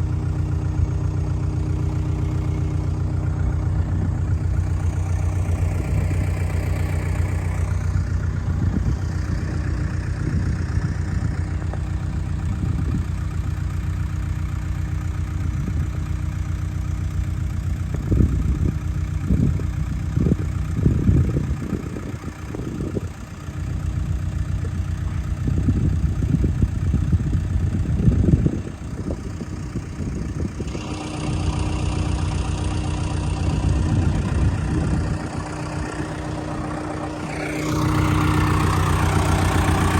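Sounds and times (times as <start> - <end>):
backhoe diesel engine running: 0.0 - 39.9
low thumps and rumbles: 0.0 - 39.9.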